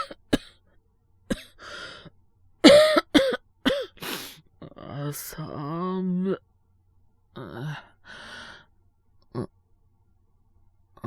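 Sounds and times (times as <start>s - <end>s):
man coughing: 0.0s - 0.5s, 2.7s - 4.0s
noisy breath in: 1.6s - 2.1s, 4.0s - 4.4s, 8.0s - 8.7s.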